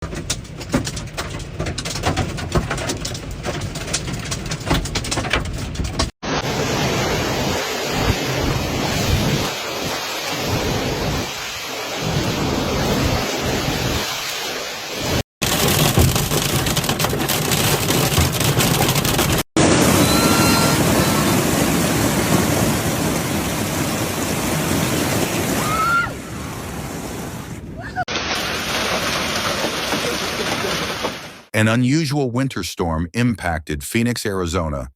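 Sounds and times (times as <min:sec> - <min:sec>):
thunder rumbling: 0:02.4 - 0:14.1, 0:15.0 - 0:25.7
heavy rain pouring: 0:06.2 - 0:31.6.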